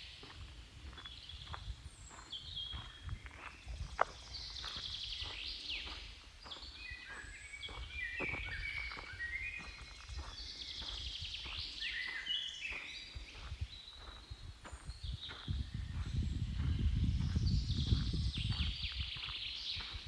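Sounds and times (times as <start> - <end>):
birds singing with trills: 0.0 - 20.0.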